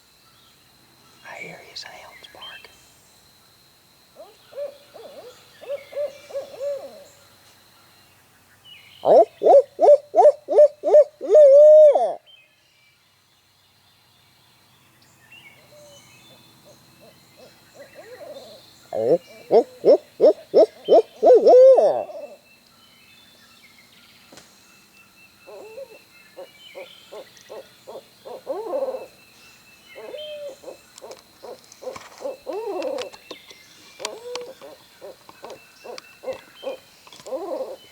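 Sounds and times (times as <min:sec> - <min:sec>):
owls hooting: 0:04.2 - 0:07.2, 0:09.0 - 0:12.2, 0:17.0 - 0:22.4, 0:25.5 - 0:29.2, 0:30.0 - 0:33.2, 0:34.0 - 0:37.9.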